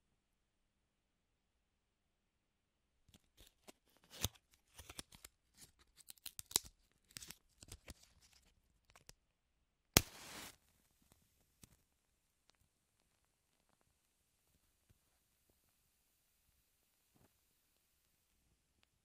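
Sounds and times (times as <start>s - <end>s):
matches clicking and scraping: 3.2s - 9.1s
match striking and igniting: 10.0s - 10.6s
faint steady hiss: 10.0s - 19.0s.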